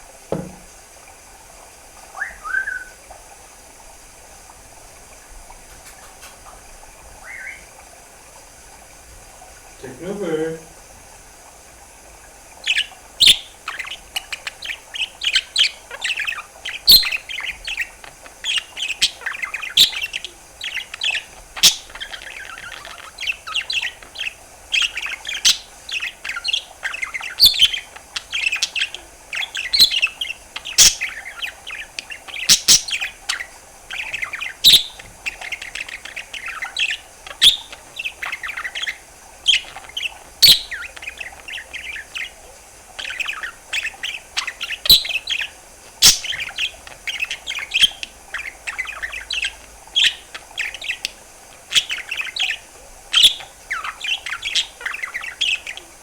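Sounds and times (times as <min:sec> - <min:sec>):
sharp pops: 0:00.3 - 0:00.7
budgerigar warbling: 0:07.2 - 0:07.7, 0:12.6 - 0:56.0.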